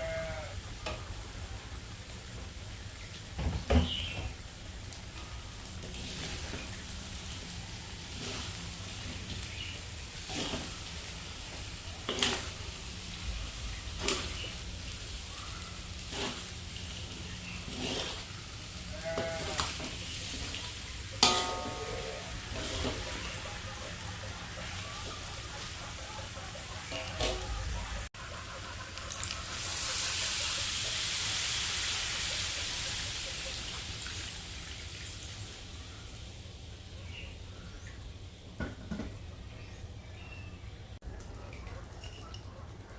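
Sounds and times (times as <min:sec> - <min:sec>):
cooking hiss: 0:00.0 - 0:39.1
food sizzling in a pan: 0:05.2 - 0:26.4, 0:29.0 - 0:36.4.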